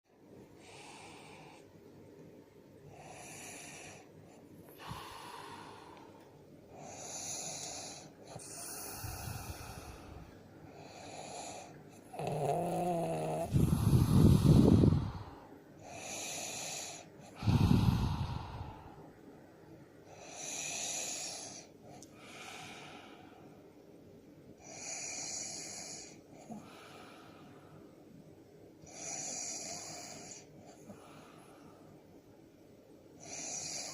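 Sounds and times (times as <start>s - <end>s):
man snoring: 6.8s - 10.2s, 10.8s - 15.2s, 15.9s - 18.8s, 24.6s - 26.6s, 28.9s - 30.5s, 33.2s - 33.9s.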